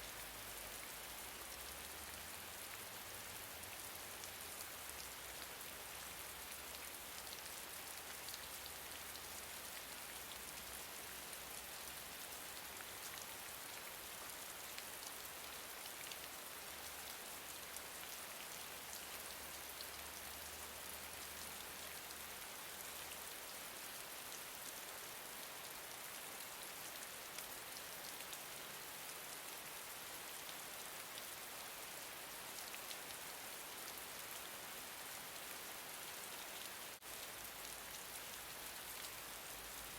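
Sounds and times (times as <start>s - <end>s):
gentle rain: 0.0s - 39.9s.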